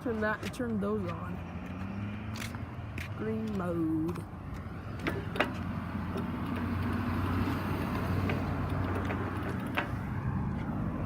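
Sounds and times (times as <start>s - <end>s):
road traffic passing: 0.0s - 11.0s.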